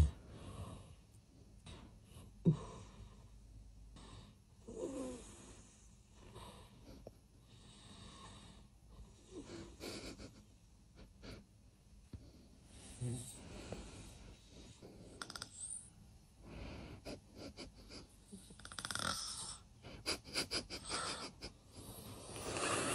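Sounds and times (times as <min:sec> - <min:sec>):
man snoring: 0:18.6 - 0:19.6, 0:22.2 - 0:22.9.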